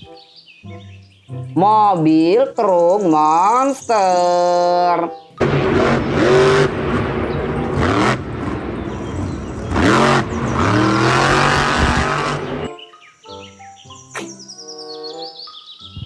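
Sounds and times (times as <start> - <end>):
car engine revving: 5.4 - 12.7.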